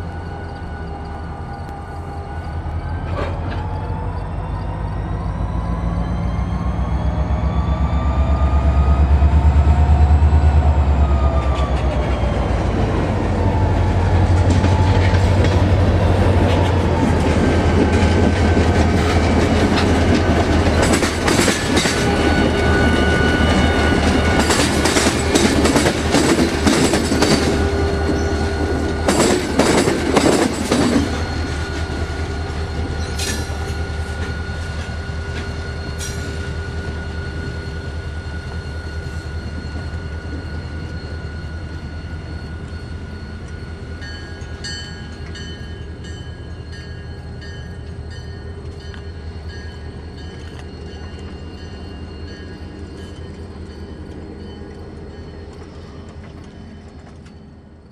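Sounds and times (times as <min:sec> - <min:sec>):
thin steady squeal: 0:00.0 - 0:06.0, 0:30.3 - 0:57.9
engine whine: 0:00.0 - 0:46.0
diesel locomotive rumble: 0:00.0 - 0:57.2
wheels clicking over rail joints: 0:14.3 - 0:36.5.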